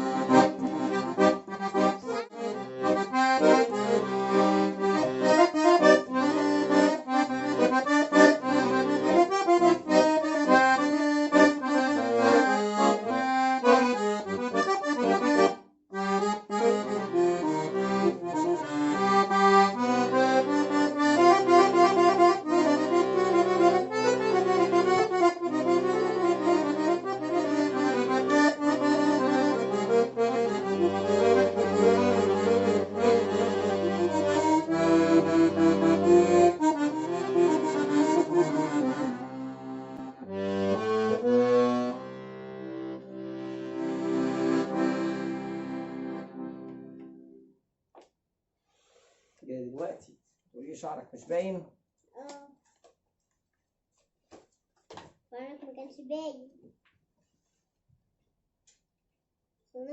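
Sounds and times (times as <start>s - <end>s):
accordion playing chords: 0.0s - 47.6s.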